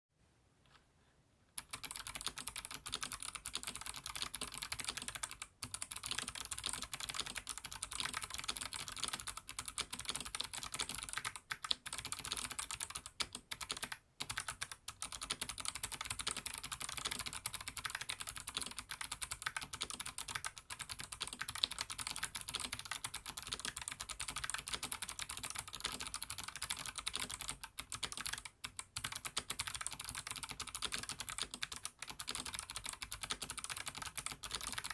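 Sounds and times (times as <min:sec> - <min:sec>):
mechanical keyboard typing: 0:01.6 - 0:34.9.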